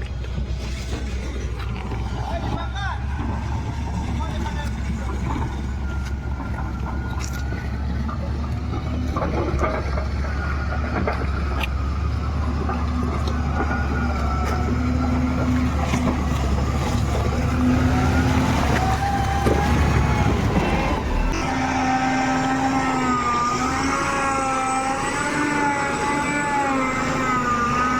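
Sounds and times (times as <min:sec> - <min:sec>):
heavy machine engine rumbling: 0:00.0 - 0:27.9
scattered clicks and knocks: 0:03.1 - 0:14.6
wavering whine: 0:04.2 - 0:27.9.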